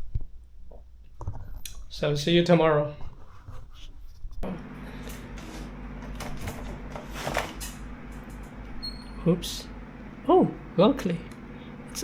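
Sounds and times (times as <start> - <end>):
steady machine hum: 4.4 - 12.0.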